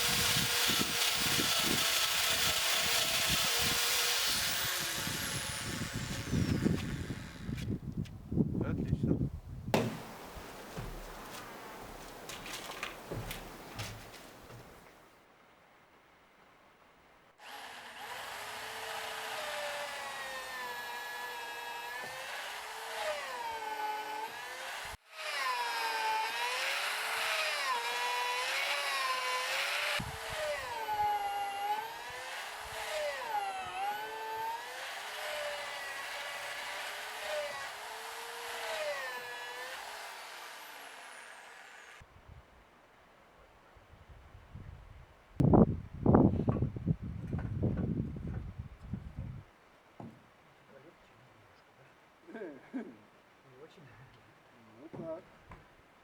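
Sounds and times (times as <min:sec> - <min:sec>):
electric drill whining in timber: 0:00.0 - 0:07.7, 0:17.4 - 0:42.0.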